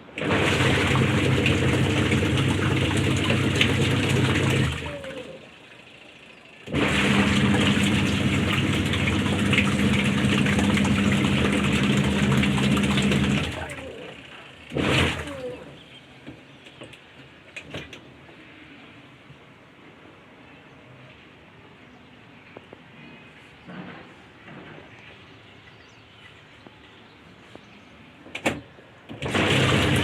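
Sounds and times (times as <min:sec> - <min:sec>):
churning water: 0:00.0 - 0:05.9, 0:06.6 - 0:16.0, 0:29.1 - 0:30.0
washing machine motor humming: 0:00.0 - 0:16.3, 0:29.1 - 0:30.0
loud burst of noise: 0:00.1 - 0:05.3, 0:06.6 - 0:15.8, 0:29.2 - 0:30.0.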